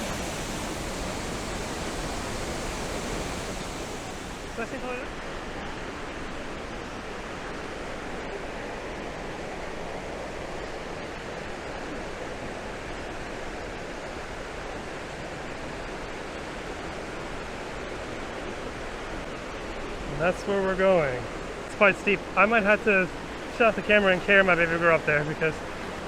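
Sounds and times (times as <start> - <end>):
waterfall rushing: 0.0 - 5.1.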